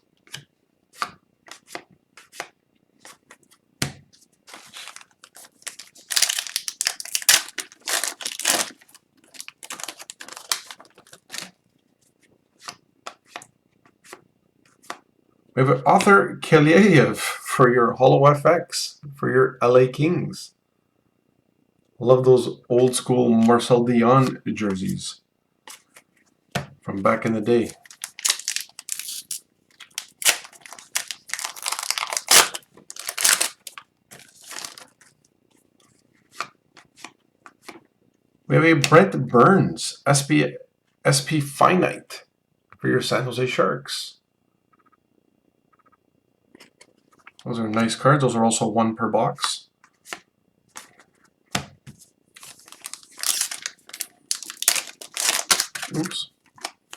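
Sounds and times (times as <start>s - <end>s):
rustling of handling: 1.0s - 15.0s, 27.2s - 37.9s, 49.8s - 56.9s
foil wrapper tearing and crinkling: 4.5s - 11.5s, 27.7s - 35.0s, 52.4s - 56.8s.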